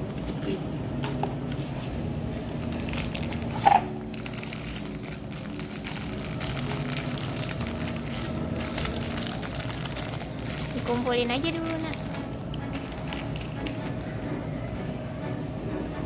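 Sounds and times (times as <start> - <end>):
plastic packaging crinkling: 2.6 - 13.8.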